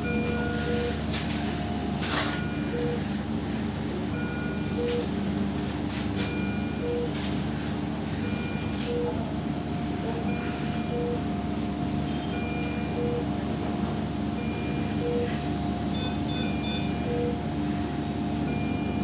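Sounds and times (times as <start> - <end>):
electronic alarm beeps: 0.0 - 1.0, 6.3 - 7.1, 10.3 - 11.2, 12.1 - 13.3, 14.4 - 17.4, 18.5 - 19.0
steady machine hum: 0.0 - 19.0.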